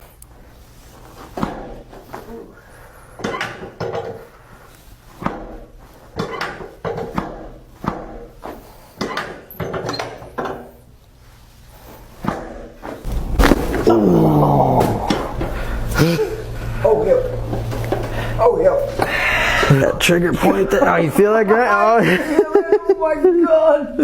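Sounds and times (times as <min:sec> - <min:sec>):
person groaning: 0:13.7 - 0:16.5, 0:19.0 - 0:20.9.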